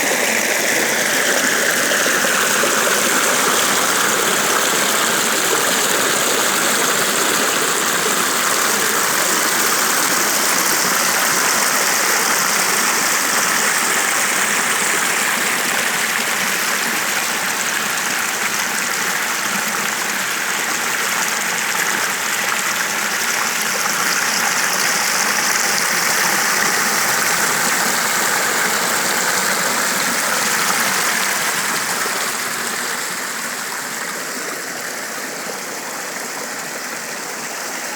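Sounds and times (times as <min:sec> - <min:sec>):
flowing water rushing: 0:00.0 - 0:37.9.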